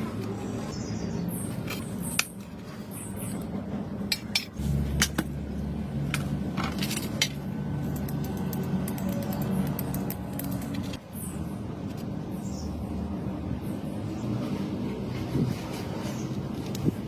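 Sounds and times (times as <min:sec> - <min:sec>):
small tools clicking: 0:06.1 - 0:11.0.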